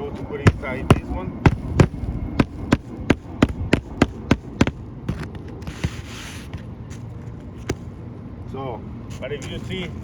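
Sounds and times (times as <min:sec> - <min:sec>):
shingle scraping rustle: 0:00.1 - 0:07.9
hammer striking nails: 0:00.5 - 0:04.8.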